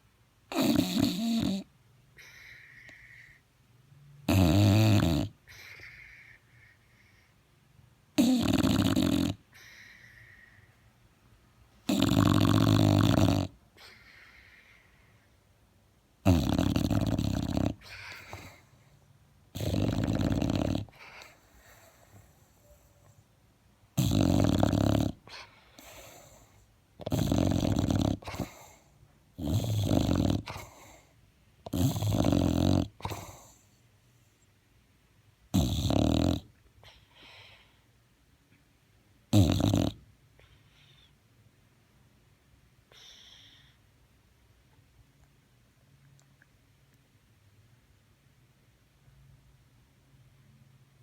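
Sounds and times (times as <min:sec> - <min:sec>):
dog snoring loudly: 0:00.5 - 0:01.7, 0:04.2 - 0:06.1, 0:08.2 - 0:09.8, 0:11.8 - 0:13.6, 0:16.2 - 0:18.7, 0:19.5 - 0:21.9, 0:24.0 - 0:28.8, 0:29.4 - 0:33.6, 0:35.5 - 0:36.5, 0:39.3 - 0:40.0
faint breath out: 0:09.5 - 0:11.0, 0:20.9 - 0:23.2, 0:36.8 - 0:37.9.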